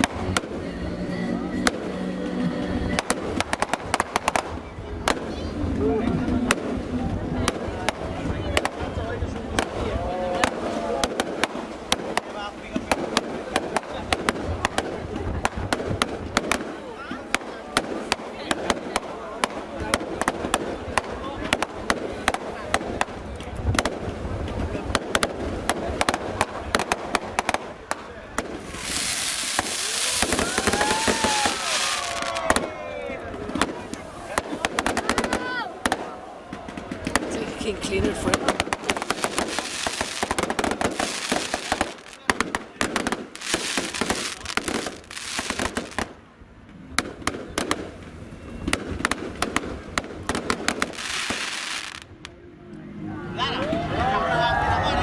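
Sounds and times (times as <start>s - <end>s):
fireworks bangs and cracks: 0.0s - 0.6s, 3.0s - 52.4s
fireworks crackling hiss: 23.9s - 36.1s, 36.9s - 46.2s, 48.8s - 52.3s.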